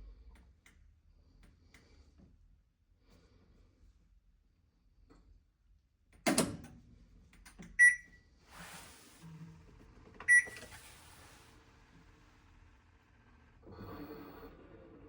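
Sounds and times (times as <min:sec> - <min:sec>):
washing machine electronic beeps: 0:07.8 - 0:08.2, 0:10.3 - 0:11.0.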